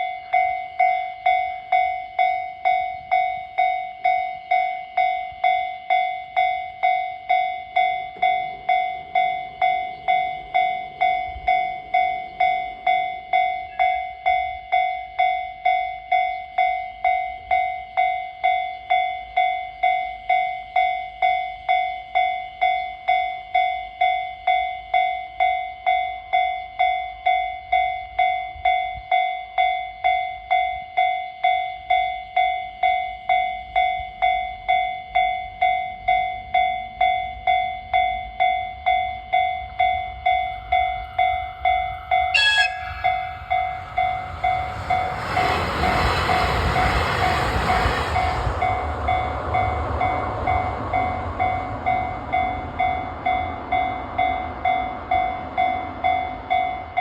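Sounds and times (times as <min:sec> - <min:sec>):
level crossing warning bell: 0:00.0 - 0:57.0.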